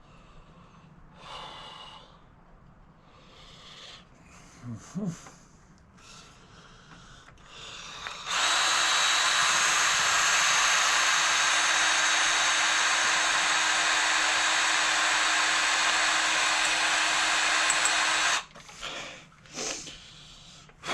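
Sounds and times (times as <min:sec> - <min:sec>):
electric drill running: 0:08.1 - 0:18.5.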